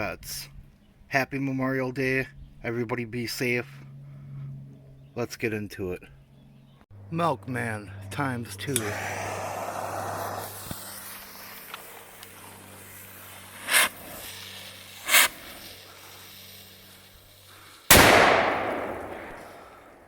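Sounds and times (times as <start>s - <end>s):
firecracker hissing spurts: 8.8s - 20.0s
loud firecracker bang echoing: 17.9s - 20.0s.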